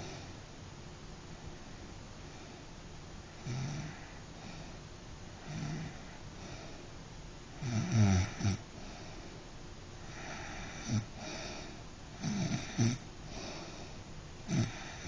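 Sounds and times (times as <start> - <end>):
person snoring: 3.4 - 4.7, 5.4 - 6.7, 7.6 - 9.0, 10.1 - 13.9, 14.5 - 15.0.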